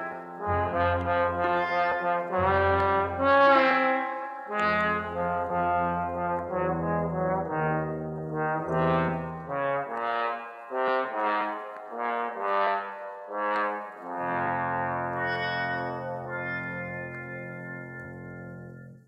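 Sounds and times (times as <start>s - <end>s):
brass music held notes: 0.0s - 19.0s.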